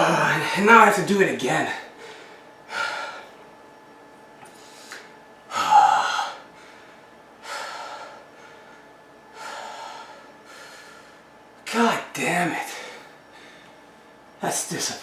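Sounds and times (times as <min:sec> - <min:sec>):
man groaning: 0:00.0 - 0:00.6, 0:05.5 - 0:06.4.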